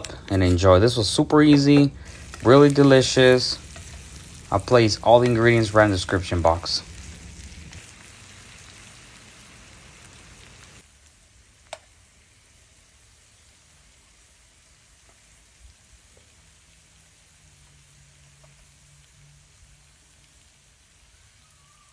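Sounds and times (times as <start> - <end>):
faint hiss: 0.0 - 21.9
food sizzling in a frying pan: 0.1 - 21.9.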